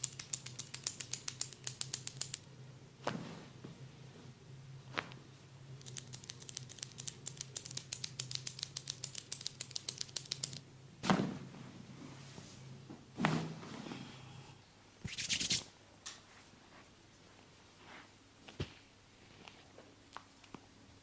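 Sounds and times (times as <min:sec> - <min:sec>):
hands rubbing skin: 0:15.1 - 0:15.6.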